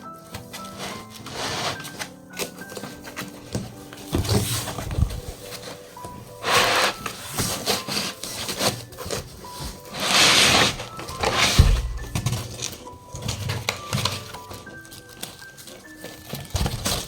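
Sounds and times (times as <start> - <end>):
cardboard and packing scraping: 0.0 - 17.0
dull thump: 11.4 - 12.6.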